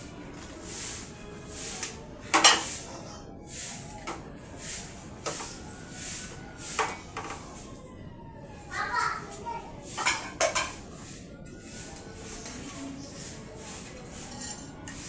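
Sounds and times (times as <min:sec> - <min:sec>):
utensils clinking against cookware: 0:01.7 - 0:03.0, 0:09.9 - 0:10.9, 0:12.3 - 0:15.0.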